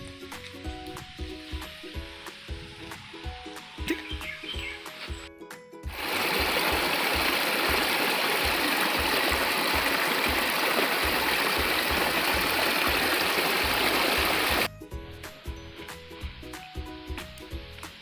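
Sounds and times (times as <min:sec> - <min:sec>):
stream water rushing: 0:05.9 - 0:14.7.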